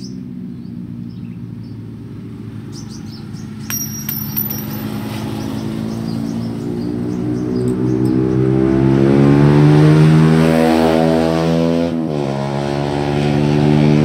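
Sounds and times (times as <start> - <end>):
motorcycle engine running: 0.1 - 7.5.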